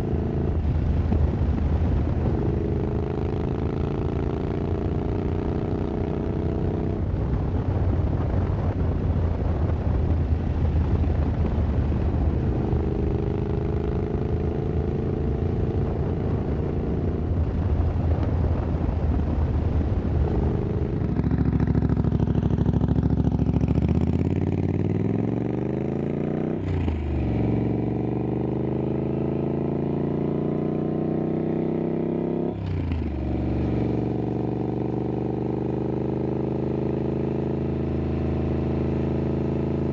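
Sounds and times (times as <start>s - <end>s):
wind rumble: 0.0s - 31.3s
motorcycle engine accelerating: 0.0s - 39.9s.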